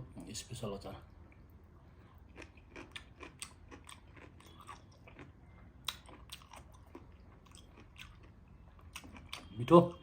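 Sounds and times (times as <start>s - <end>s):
crunchy chewing: 2.1s - 9.7s.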